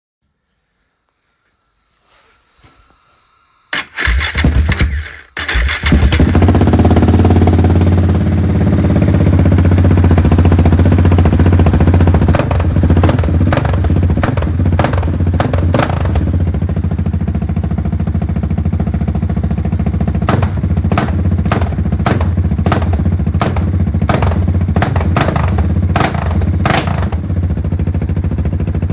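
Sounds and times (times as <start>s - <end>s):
motorcycle engine running unsilenced: 2.9s - 28.9s
short sharp exhaust cracks: 3.7s - 8.0s.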